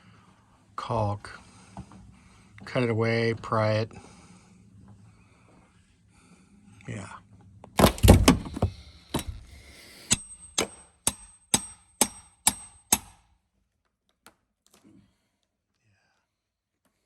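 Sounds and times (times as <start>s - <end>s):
hammer striking metal: 9.2s - 13.2s.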